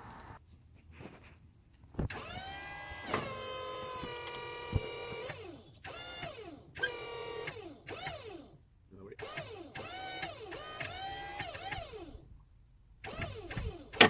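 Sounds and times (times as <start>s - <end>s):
small electric motor whining: 2.1s - 8.6s, 9.2s - 12.3s, 13.0s - 14.0s.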